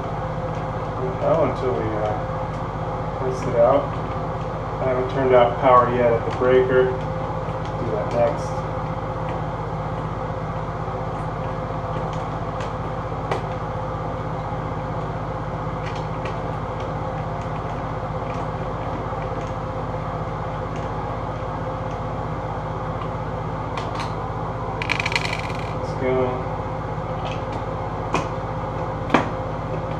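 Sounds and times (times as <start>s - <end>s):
mechanical drone: 24.0s - 26.7s.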